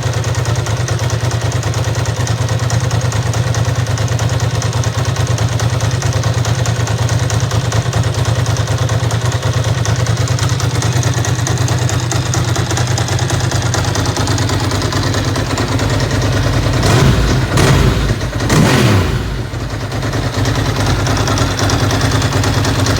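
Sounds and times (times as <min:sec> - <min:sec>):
motorcycle engine idling: 0:00.0 - 0:22.9
engine throttle blips: 0:15.2 - 0:22.9.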